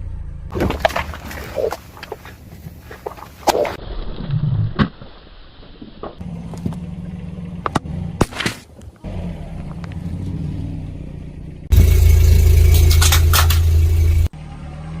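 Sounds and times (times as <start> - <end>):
car engine humming: 0.0 - 3.8, 6.2 - 15.0
tyres crushing objects: 0.5 - 3.8.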